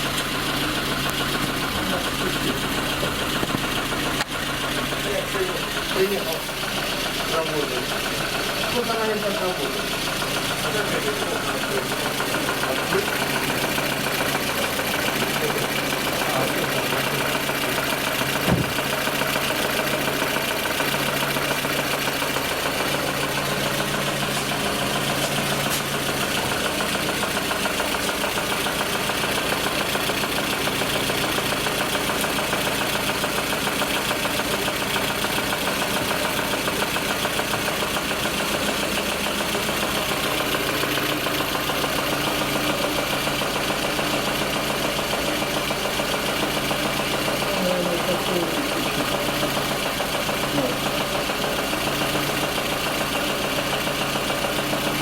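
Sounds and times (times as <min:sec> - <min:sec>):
car engine idling unevenly: 0:00.0 - 0:55.0
sharp knock: 0:18.4 - 0:18.8.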